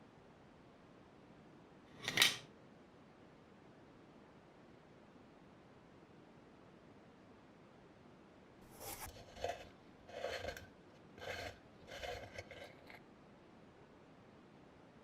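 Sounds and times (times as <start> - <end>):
short scraping strokes: 8.7 - 13.0.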